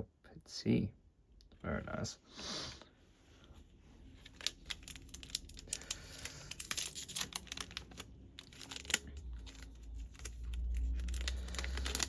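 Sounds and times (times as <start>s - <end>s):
wrapper tearing and crinkling: 4.2s - 12.0s.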